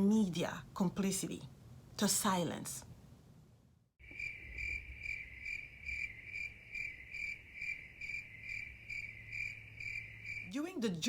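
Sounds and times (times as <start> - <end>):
crickets chirping: 4.0 - 10.9.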